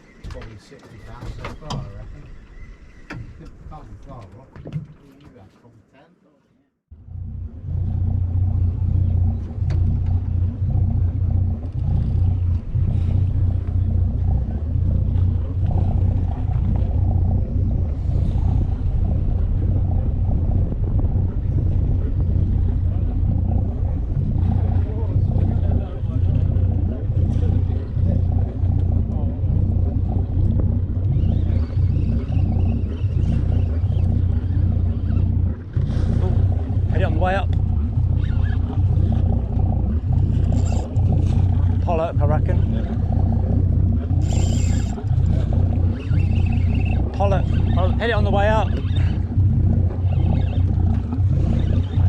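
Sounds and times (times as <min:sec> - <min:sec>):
boat engine rumbling: 0:00.0 - 0:05.8, 0:06.8 - 0:52.0.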